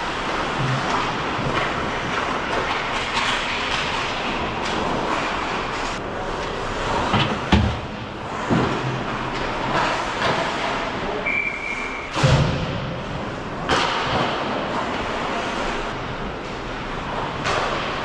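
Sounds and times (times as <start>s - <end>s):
skates scraping on ice: 0.0s - 7.5s, 8.2s - 12.3s
stick and puck knocks: 13.7s - 14.5s.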